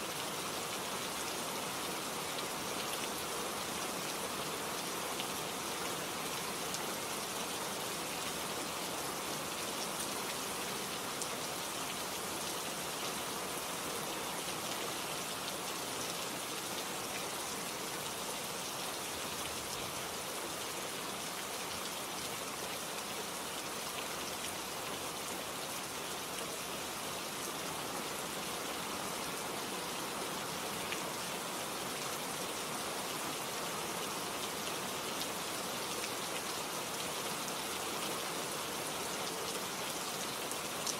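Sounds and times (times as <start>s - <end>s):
steady rain falling: 0.0s - 40.9s.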